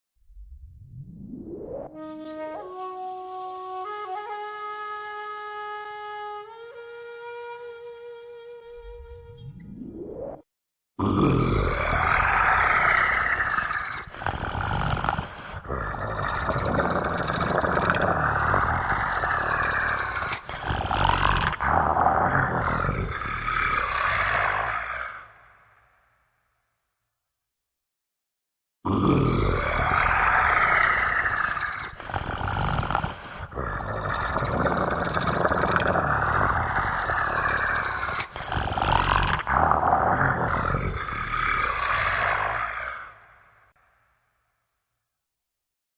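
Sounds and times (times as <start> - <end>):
monster growling: 11.0 - 26.1, 28.9 - 44.1.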